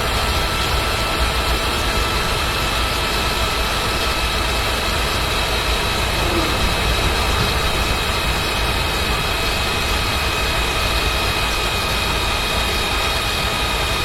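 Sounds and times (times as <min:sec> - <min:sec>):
car engine and road rumble: 0:00.0 - 0:14.0.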